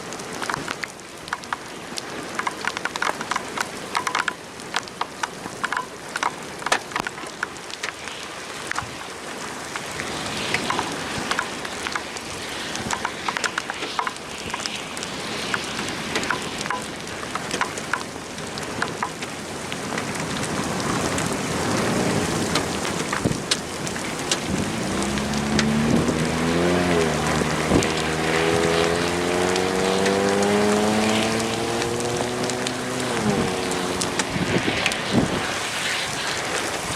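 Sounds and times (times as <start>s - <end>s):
rain drop ticks: 0.0s - 35.6s
steady rain: 0.0s - 36.9s
engine speeding up: 24.2s - 35.8s.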